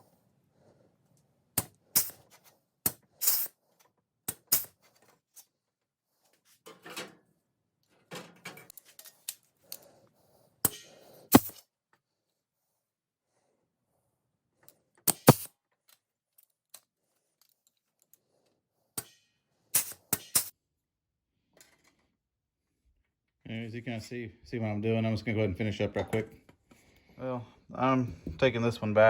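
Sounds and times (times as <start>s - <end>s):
pneumatic punch tool clacks: 1.6s - 2.3s, 2.9s - 3.5s, 4.3s - 4.8s, 11.3s - 11.6s, 15.0s - 15.5s, 19.7s - 20.5s.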